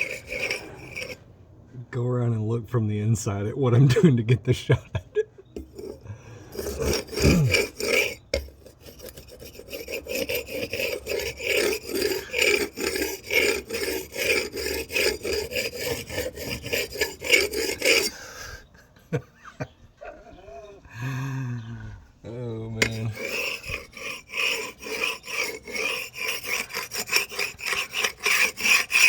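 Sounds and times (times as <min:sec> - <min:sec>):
hand tool scraping paint off wood: 0:00.0 - 0:01.2, 0:05.6 - 0:18.2, 0:22.8 - 0:29.0.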